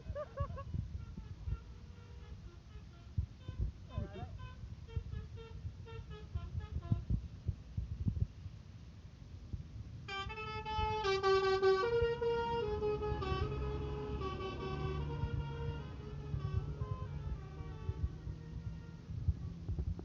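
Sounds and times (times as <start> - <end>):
multi-tone bus horn: 0.9 - 7.1, 10.1 - 19.7.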